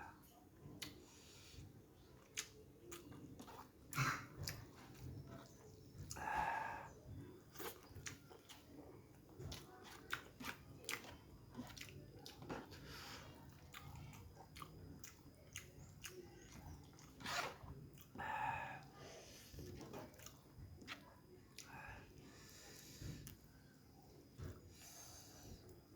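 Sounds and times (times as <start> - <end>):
person chewing and lip-smacking: 2.2 - 18.2, 19.6 - 21.8.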